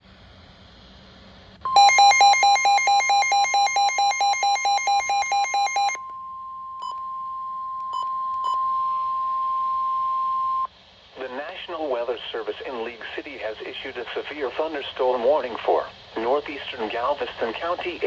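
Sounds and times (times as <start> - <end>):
rapid electronic beeping: 1.8 - 6.0.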